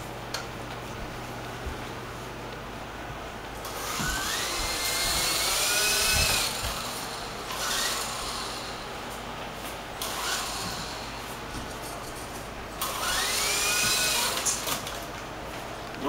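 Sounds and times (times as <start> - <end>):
remote control helicopter motor whining: 3.7 - 8.9, 10.0 - 11.2, 12.8 - 14.9.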